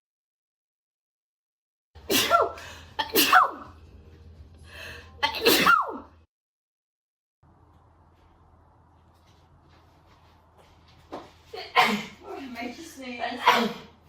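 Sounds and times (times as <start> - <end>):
woman sneezing: 2.1 - 3.6, 5.2 - 6.1, 11.6 - 12.2, 13.4 - 14.0.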